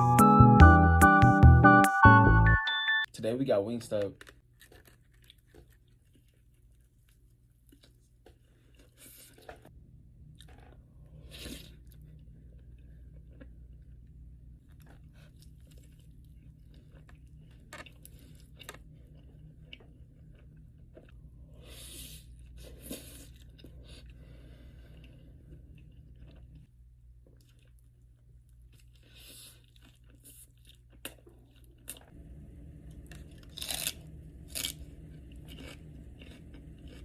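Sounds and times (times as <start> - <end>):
person chewing and crunching food: 3.9 - 32.2, 32.9 - 37.0
steady low hum: 9.7 - 29.2, 31.4 - 37.0.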